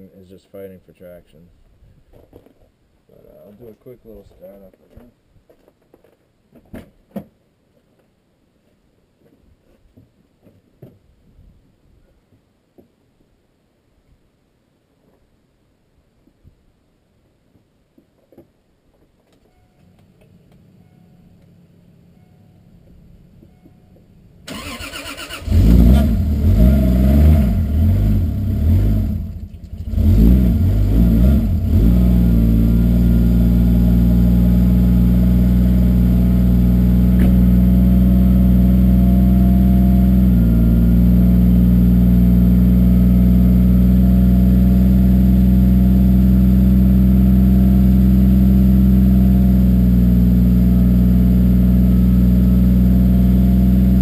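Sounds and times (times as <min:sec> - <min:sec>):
car engine starting and idling: 0:23.2 - 0:54.0.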